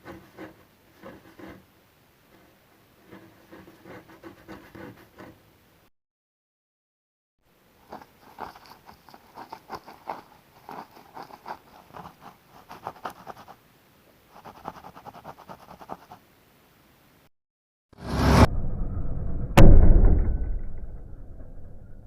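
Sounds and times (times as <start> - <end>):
rapid scratching strokes: 0.0 - 1.7, 2.3 - 5.4, 7.8 - 13.6, 14.4 - 16.2.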